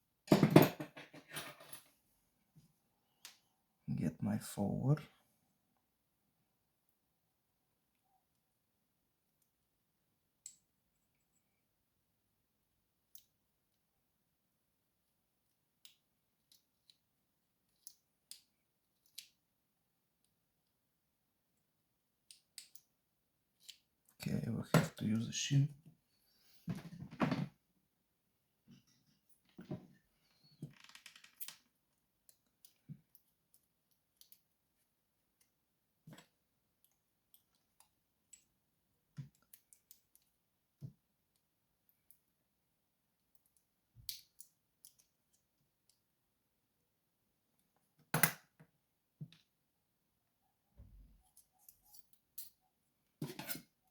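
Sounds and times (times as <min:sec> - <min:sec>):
small metallic clicks and taps: 0:22.3 - 0:22.9.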